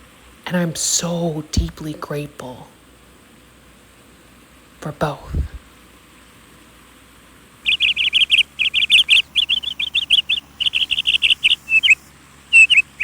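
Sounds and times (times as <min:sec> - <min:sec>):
bird chirping quick high notes: 0:07.7 - 0:13.0.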